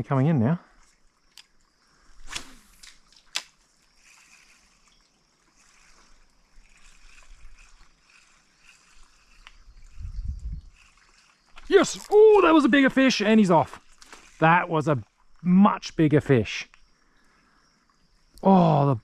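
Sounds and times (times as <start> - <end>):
water trickling and lapping: 0.6 - 15.4.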